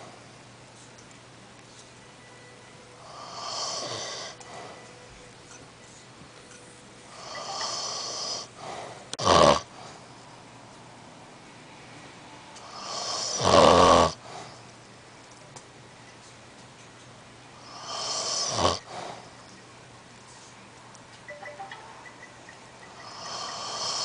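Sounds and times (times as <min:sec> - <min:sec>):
man snoring loudly: 0:03.1 - 0:04.4, 0:09.2 - 0:09.7, 0:12.7 - 0:14.2, 0:17.7 - 0:18.8, 0:23.0 - 0:24.0.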